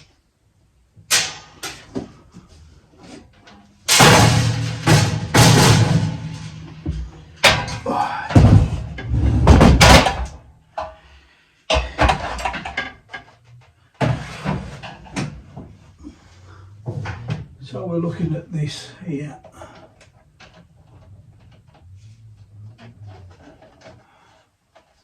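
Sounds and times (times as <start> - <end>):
hard objects knocking and clattering: 3.9 - 11.0, 11.7 - 15.8.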